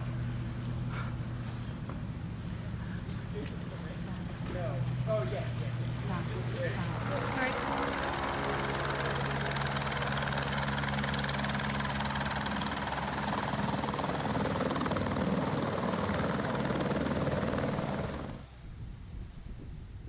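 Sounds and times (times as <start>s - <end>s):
motor humming: 5.9s - 18.5s
faint wind on microphone: 15.4s - 20.0s.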